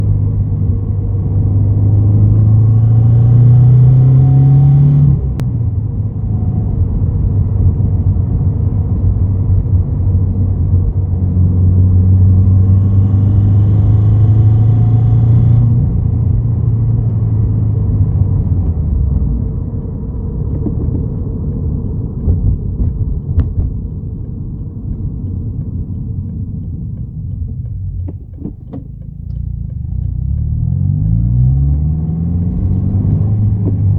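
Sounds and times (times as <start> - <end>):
car engine pulling under load: 12.0 - 33.9.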